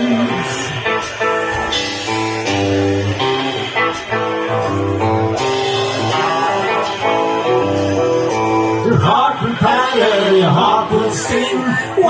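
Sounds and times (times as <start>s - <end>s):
rock band playing: 0.0s - 12.0s.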